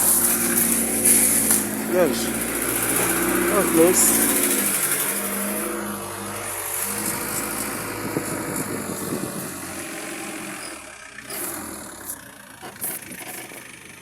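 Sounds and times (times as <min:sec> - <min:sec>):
vehicle engine running: 0:00.0 - 0:14.0.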